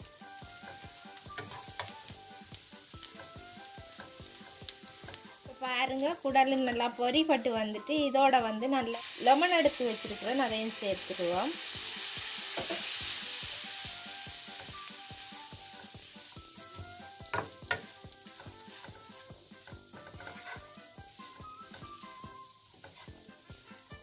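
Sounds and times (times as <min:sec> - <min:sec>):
meat sizzling in hot oil: 0:00.0 - 0:24.0
spatula knocking on pan: 0:12.5 - 0:12.9, 0:16.5 - 0:22.0.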